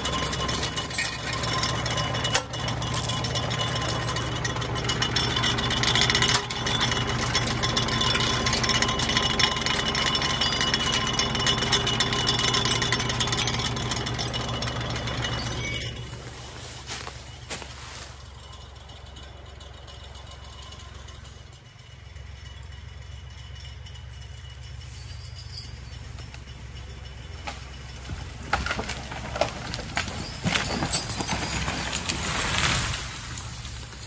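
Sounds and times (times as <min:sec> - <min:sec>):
engine running: 0:00.0 - 0:34.0
tree cracking and snapping: 0:27.4 - 0:34.0.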